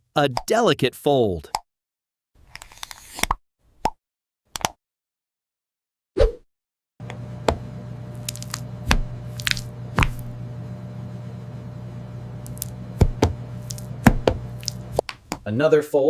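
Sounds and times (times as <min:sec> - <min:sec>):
steady low hum: 0:07.0 - 0:15.1
dough squishing and tapping: 0:08.2 - 0:10.4, 0:12.5 - 0:15.5.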